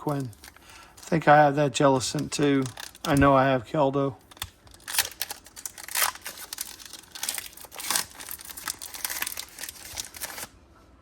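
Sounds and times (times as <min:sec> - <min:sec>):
cards rustling: 0:04.2 - 0:10.5.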